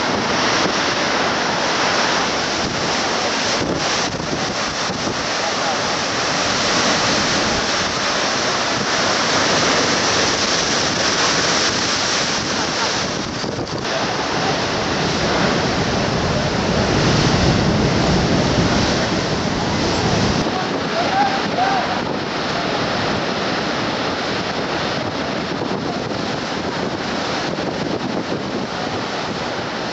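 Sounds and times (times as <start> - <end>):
heavy waves breaking on shore: 0.0 - 29.9.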